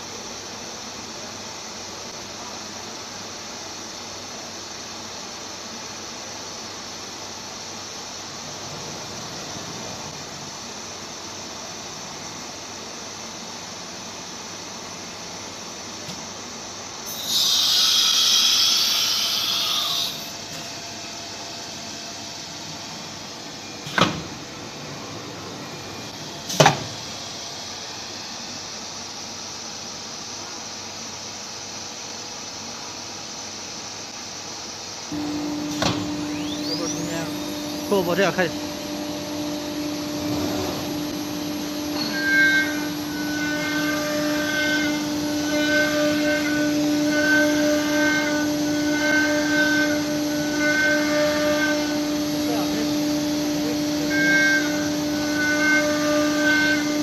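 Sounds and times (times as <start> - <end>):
steady machine hiss: 0.0 - 57.0
router spindle whine: 35.1 - 57.0
tool changer clunks with air burst: 35.3 - 38.1.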